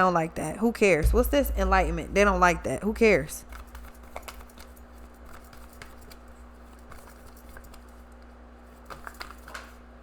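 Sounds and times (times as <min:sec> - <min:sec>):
low hum: 0:01.0 - 0:04.1.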